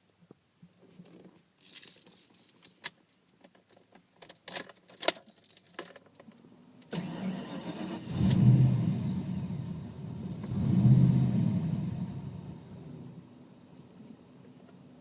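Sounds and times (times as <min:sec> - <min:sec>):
keys jangling: 0:01.6 - 0:02.9, 0:04.2 - 0:06.3
truck engine starting and running: 0:06.9 - 0:13.2.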